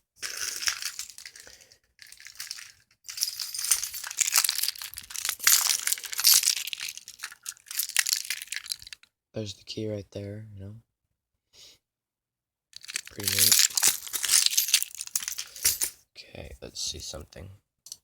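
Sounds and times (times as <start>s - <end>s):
handcuffs clicking and rattling: 0.2s - 9.0s, 12.8s - 16.0s.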